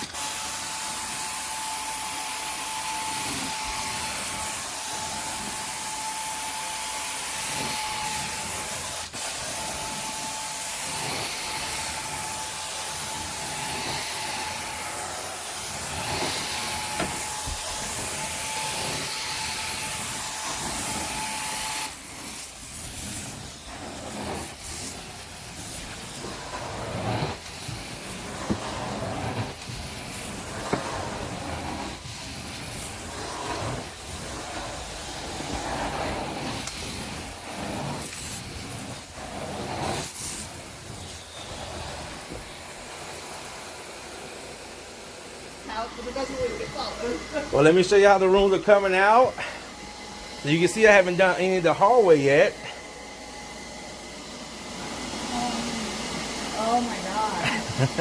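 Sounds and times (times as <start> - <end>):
suction machine whistling hiss: 0.0 - 43.5.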